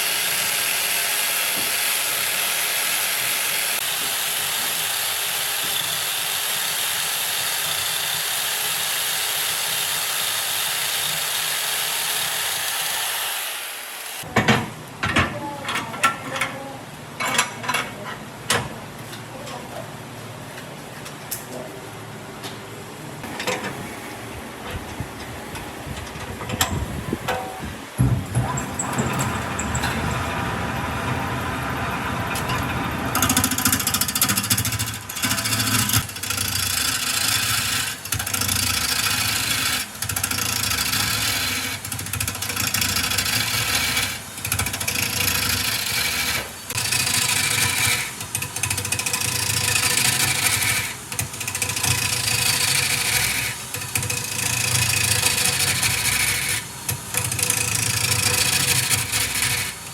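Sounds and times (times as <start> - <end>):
turning tool cutting wood: 0.0 - 14.3, 28.5 - 59.9
lathe motor hum: 28.6 - 59.9.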